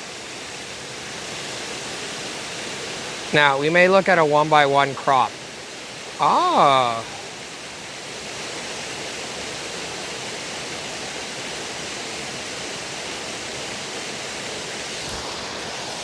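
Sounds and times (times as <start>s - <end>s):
waterfall rushing: 0.0s - 16.0s
brief knock: 15.1s - 15.9s.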